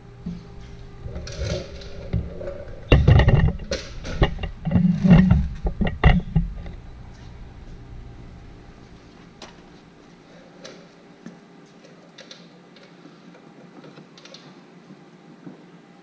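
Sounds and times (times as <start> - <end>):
plastic lamp knocks and rattles: 2.9 - 6.8.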